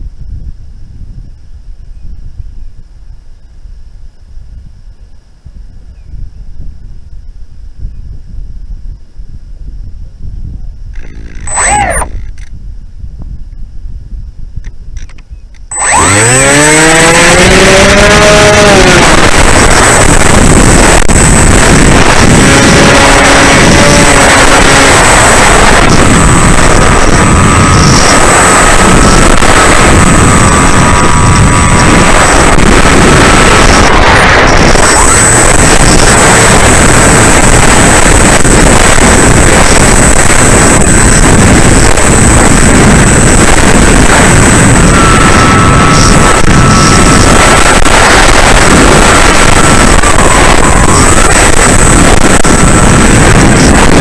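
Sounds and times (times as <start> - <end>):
wind rush on microphone: 0.0 - 54.0
electric motor and propeller whine: 10.8 - 12.6, 15.0 - 54.0
lower whistle: 15.7 - 18.3.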